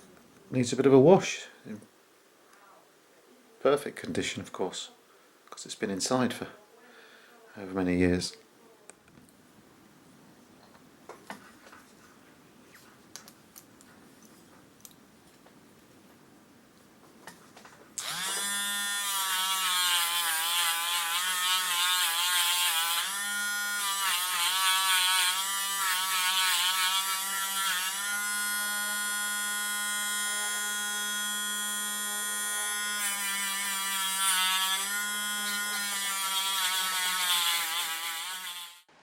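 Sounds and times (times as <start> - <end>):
handheld electric tool whining: 18.0 - 38.9.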